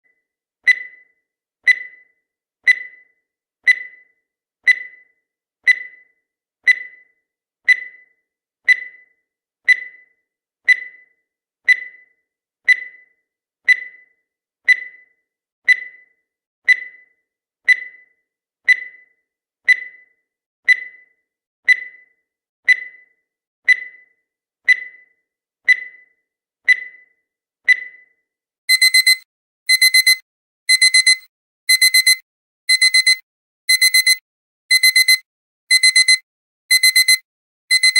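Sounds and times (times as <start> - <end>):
electronic timer ticks: 0.6 - 7.1, 7.7 - 8.1, 8.7 - 9.1, 9.7 - 10.0, 10.7 - 11.0, 11.7 - 12.0, 16.7 - 17.1, 18.7 - 19.1, 20.7 - 21.0, 21.7 - 22.0, 22.7 - 23.0, 23.7 - 24.1, 24.7 - 25.1, 28.7 - 37.9
shrill alarm beeps: 28.7 - 37.9.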